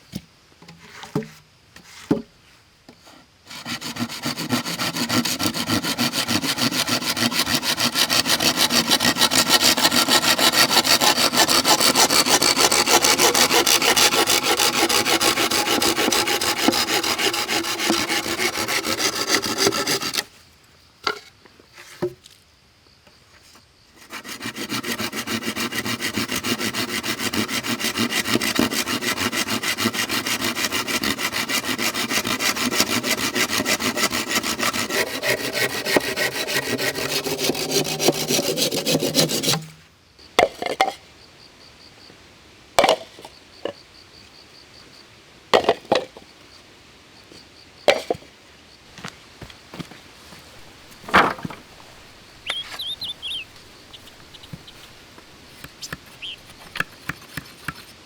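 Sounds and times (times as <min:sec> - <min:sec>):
hand tool scraping on wood: 0:03.0 - 0:20.3, 0:24.0 - 0:39.8, 0:49.8 - 0:58.0
short knocks: 0:50.6 - 0:57.2.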